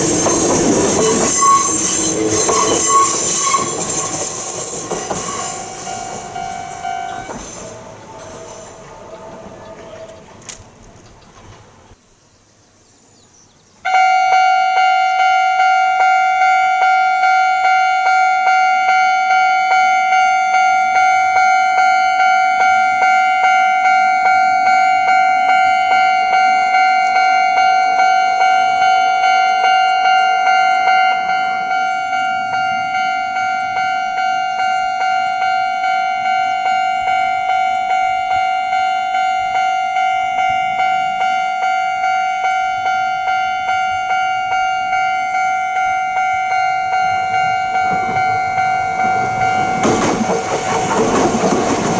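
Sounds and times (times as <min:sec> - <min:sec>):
level crossing electronic bell: 0:41.2 - 0:49.8.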